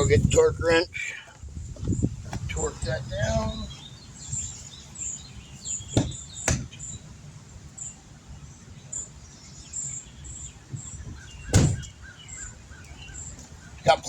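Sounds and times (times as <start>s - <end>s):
sharp knocks: 5.9s - 6.8s, 11.5s - 11.9s.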